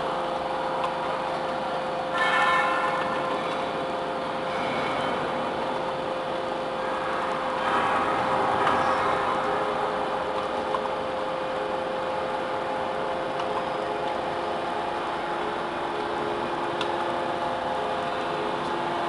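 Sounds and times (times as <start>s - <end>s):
hydraulic baler humming: 0.0s - 19.0s
metal ringing and screeching: 2.1s - 5.6s.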